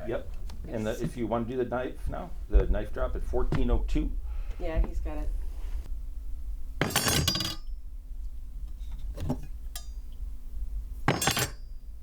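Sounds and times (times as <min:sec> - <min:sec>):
metal knife clattering: 0:06.8 - 0:07.6, 0:11.1 - 0:11.8.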